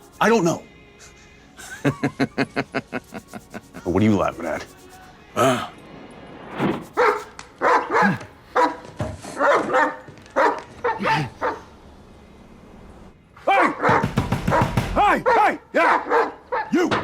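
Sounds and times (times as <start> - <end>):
man barking like a dog: 7.0 - 8.8, 9.4 - 11.6, 13.5 - 17.0.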